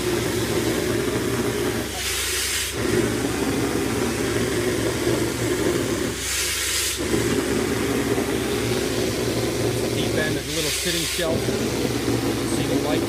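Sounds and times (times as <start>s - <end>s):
compressed air hissing: 0.0s - 13.0s
engine droning: 0.0s - 13.0s.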